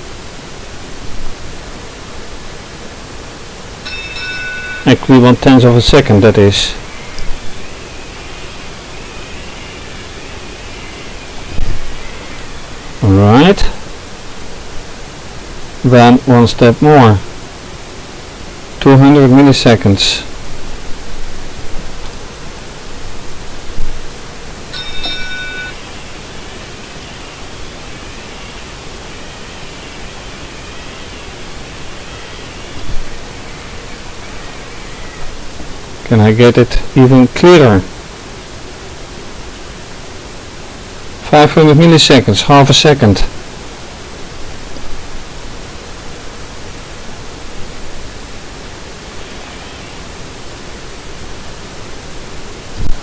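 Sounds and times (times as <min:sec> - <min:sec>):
steady hiss: 0:00.0 - 0:53.0
high electronic tones: 0:24.7 - 0:35.4.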